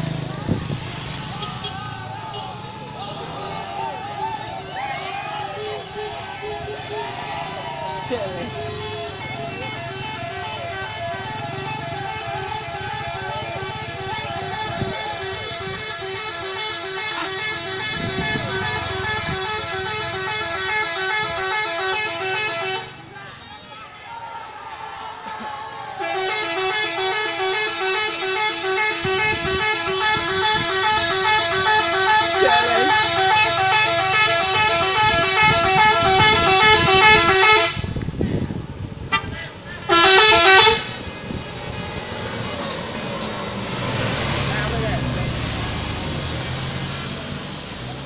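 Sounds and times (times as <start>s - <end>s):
bus musical horn playing a tune: 5.4s - 7.4s, 8.3s - 23.6s, 26.0s - 38.2s, 39.0s - 45.1s.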